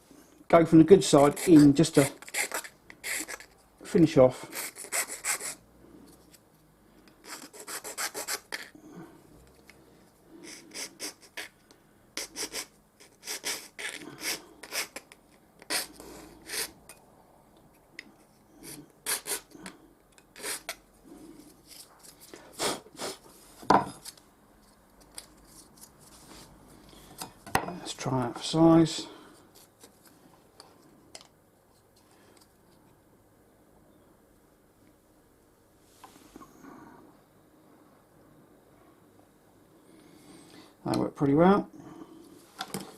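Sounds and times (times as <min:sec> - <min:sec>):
hand file rasping metal: 0:07.2 - 0:08.7.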